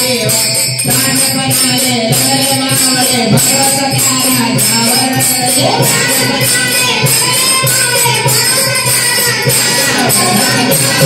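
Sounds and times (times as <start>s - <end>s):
jingling percussion: 0.0s - 11.0s
sustained melody: 0.9s - 8.2s.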